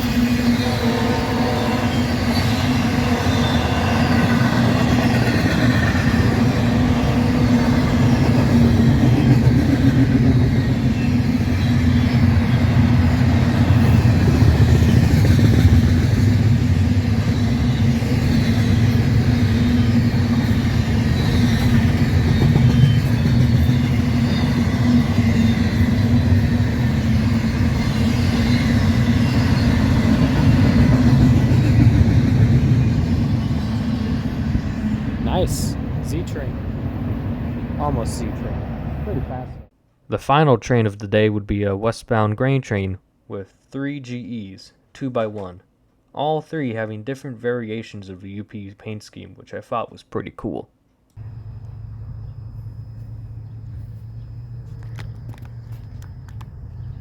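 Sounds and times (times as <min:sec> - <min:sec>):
train wheels rumbling on rail: 0:00.0 - 0:39.7, 0:51.2 - 0:57.0.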